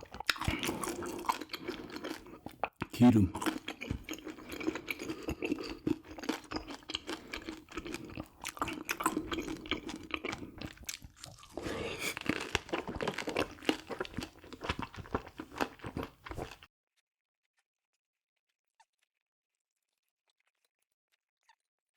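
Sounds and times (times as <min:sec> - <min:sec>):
wet mouth sounds: 0:00.0 - 0:16.6
person chewing and crunching food: 0:00.0 - 0:16.7.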